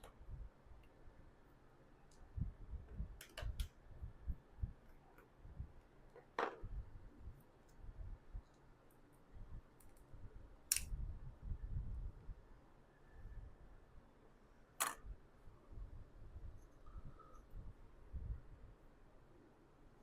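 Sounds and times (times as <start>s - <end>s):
sharp plastic snaps: 9.8s - 11.0s, 14.8s - 15.1s.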